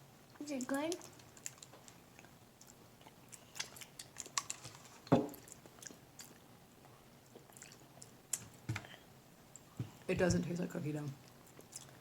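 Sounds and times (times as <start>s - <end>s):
person chewing candy: 1.0s - 9.7s, 11.2s - 12.0s.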